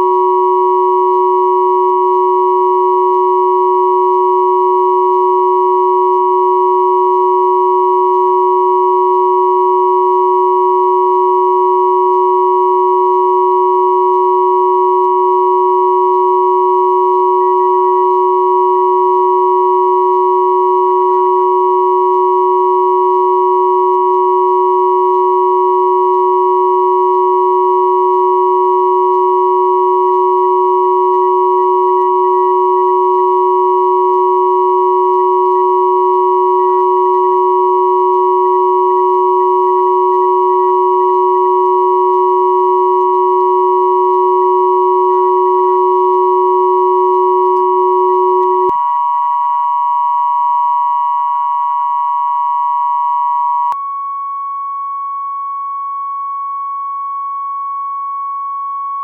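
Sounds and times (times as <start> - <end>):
steady sine tones: 0.0 - 59.0.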